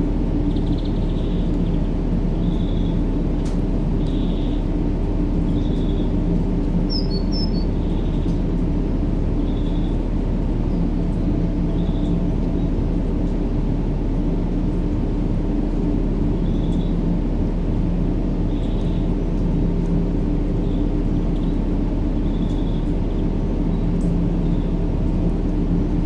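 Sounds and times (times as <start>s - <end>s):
faint bird chirps: 6.9s - 8.0s.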